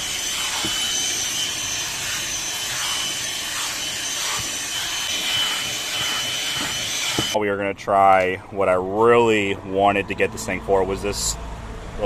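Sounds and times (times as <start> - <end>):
hand vacuum whining: 0.0 - 7.4
nozzle scraping over carpet: 0.0 - 7.4.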